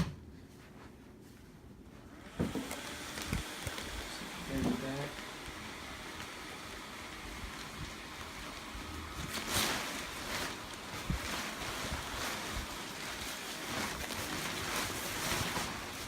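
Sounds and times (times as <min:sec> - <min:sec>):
blower fan running: 0:00.0 - 0:16.0
fabric rustling: 0:07.2 - 0:16.0.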